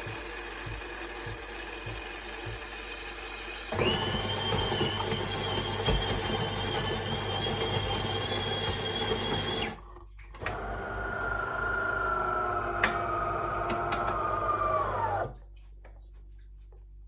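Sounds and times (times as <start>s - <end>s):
coffee machine whine: 0.0s - 9.8s, 10.4s - 15.4s.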